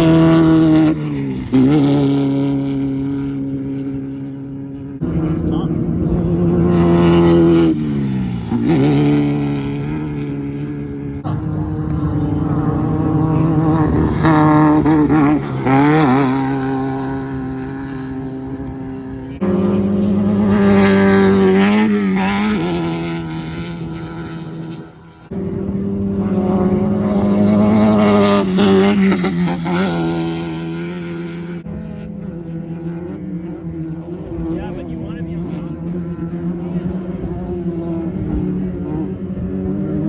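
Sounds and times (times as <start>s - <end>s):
race buggy engines passing by: 0.0s - 40.0s.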